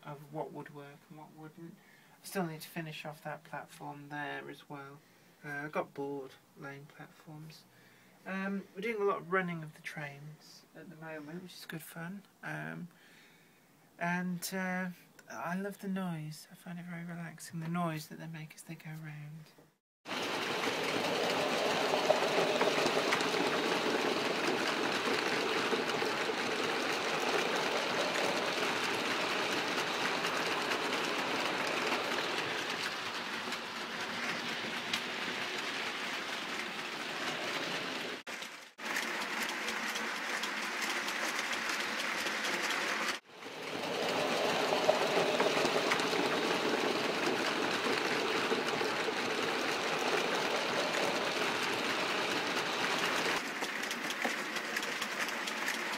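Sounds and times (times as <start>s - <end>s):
wheels rattling over track: 20.0s - 55.9s.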